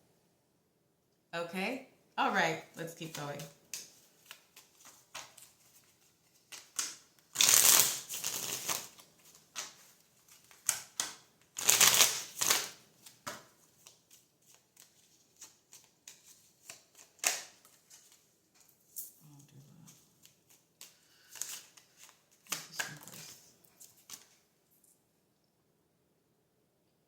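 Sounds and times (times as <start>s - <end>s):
cards being shuffled: 3.1s - 18.8s, 19.9s - 24.4s
cards flicking and tapping: 14.8s - 18.2s, 20.2s - 23.3s.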